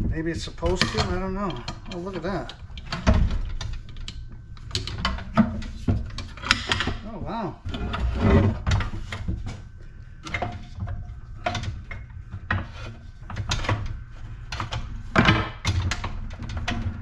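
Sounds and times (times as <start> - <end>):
metal parts knocking and clattering: 0.6 - 7.0.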